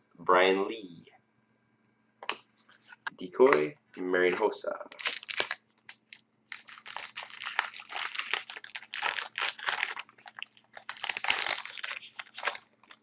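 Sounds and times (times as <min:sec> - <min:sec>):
wrapper tearing and crinkling: 0:05.0 - 0:13.0.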